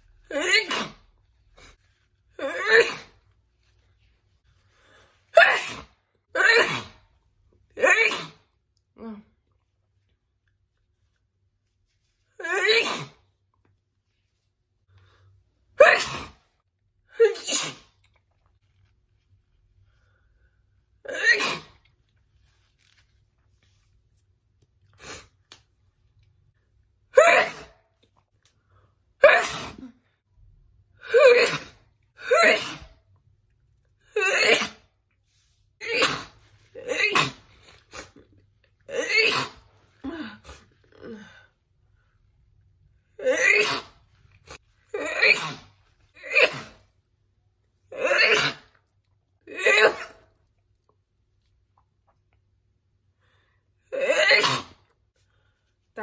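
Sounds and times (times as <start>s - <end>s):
woman sneezing: 0.3s - 1.1s, 2.4s - 3.2s, 5.3s - 7.0s, 7.8s - 8.5s, 12.4s - 13.2s, 15.8s - 16.4s, 17.1s - 18.0s, 21.1s - 21.8s, 27.2s - 27.8s, 29.2s - 30.0s, 31.0s - 33.0s, 34.2s - 34.8s, 35.8s - 38.2s, 38.9s - 40.6s, 44.9s - 46.8s, 53.9s - 54.9s.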